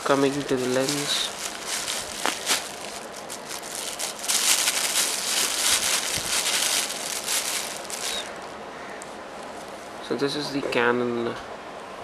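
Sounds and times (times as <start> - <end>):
packaging crinkling and rustling: 0.0 - 8.6.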